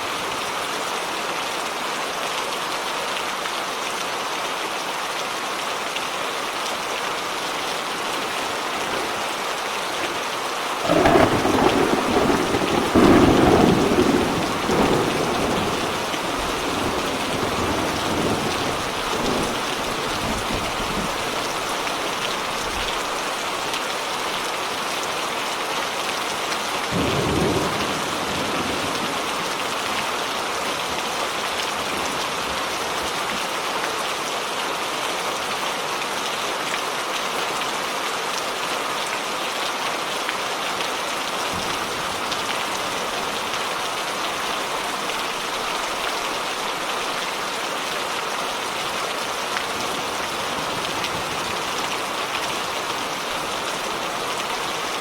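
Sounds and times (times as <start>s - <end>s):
heavy rain hissing: 5.7s - 33.2s, 41.4s - 55.0s
thunder clap rumbling: 8.1s - 10.2s, 10.8s - 21.6s.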